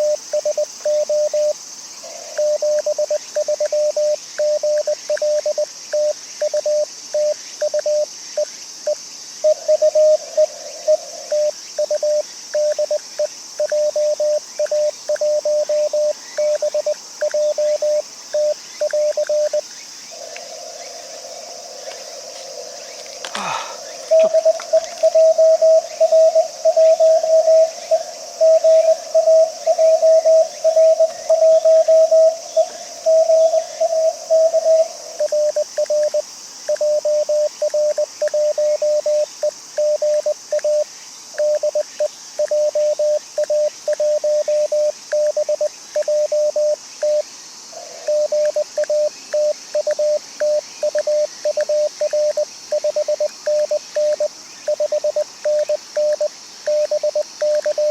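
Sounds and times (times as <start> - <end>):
morse code tones: 0.0 - 1.5, 2.4 - 8.0, 42.4 - 47.2, 48.1 - 57.9.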